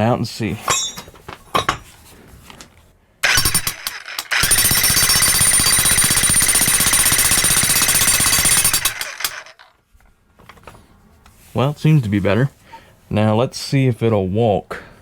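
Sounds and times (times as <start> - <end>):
electric jackhammer hammering: 3.2 - 9.7.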